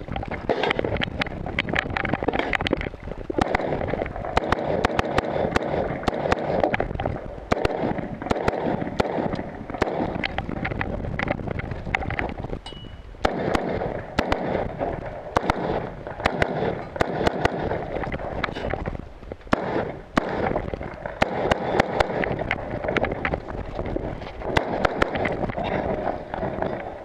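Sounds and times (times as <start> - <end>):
wind buffeting microphone: 0.0 - 27.0
rifle gunshots: 3.4 - 6.8, 7.5 - 10.3, 13.2 - 18.6, 19.5 - 23.2, 24.4 - 26.6.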